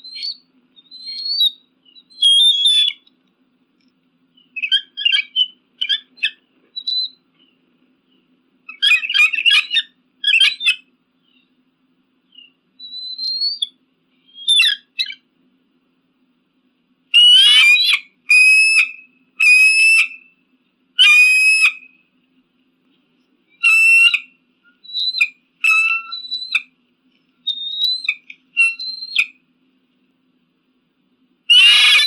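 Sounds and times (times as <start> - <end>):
eagle calling: 0.0 - 3.1, 4.4 - 7.2, 8.7 - 11.5, 12.3 - 15.3, 17.2 - 20.3, 21.0 - 22.0, 23.6 - 26.8, 27.4 - 29.4, 31.5 - 32.0.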